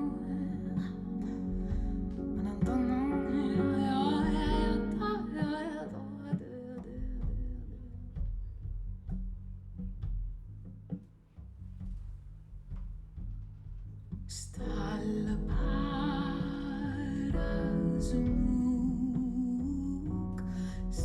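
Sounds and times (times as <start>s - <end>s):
singing with full band: 0.0s - 7.3s, 14.6s - 21.0s
single plucked notes: 0.0s - 8.2s
bass line: 0.0s - 21.0s.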